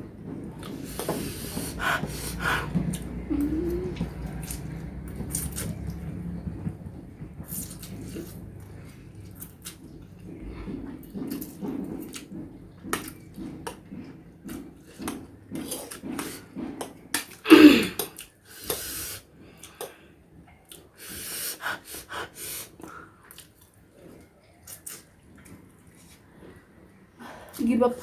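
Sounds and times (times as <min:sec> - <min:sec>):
wet chewing and slurping: 0:00.2 - 0:27.6
hissing breaths: 0:00.7 - 0:04.2, 0:18.4 - 0:20.3, 0:20.9 - 0:23.2.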